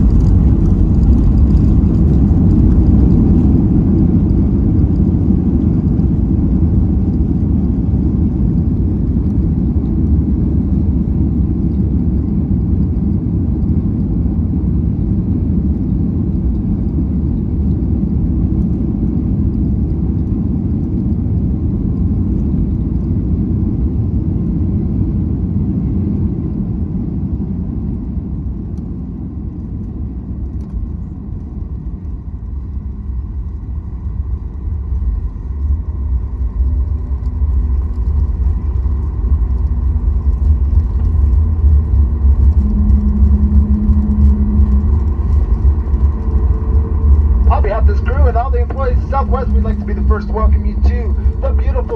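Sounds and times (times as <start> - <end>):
airliner cabin rumble: 0.0 - 51.9
faint engine whine: 0.0 - 51.9.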